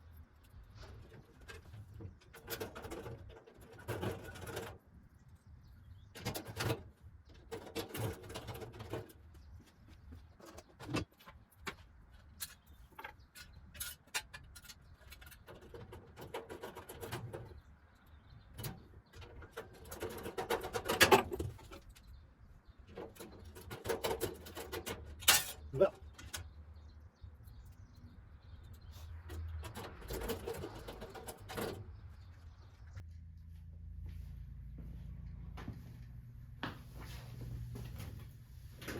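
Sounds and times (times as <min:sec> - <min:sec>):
parts knocking and clicking: 0:05.9 - 0:33.0.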